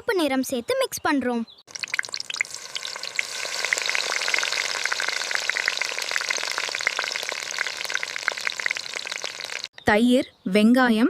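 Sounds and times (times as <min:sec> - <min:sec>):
chicken deep-frying in oil: 0:01.7 - 0:09.7.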